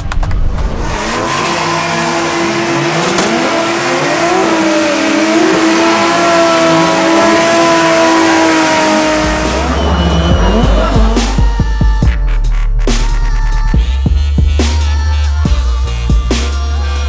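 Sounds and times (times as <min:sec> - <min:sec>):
car engine revving hard: 0:00.6 - 0:11.8.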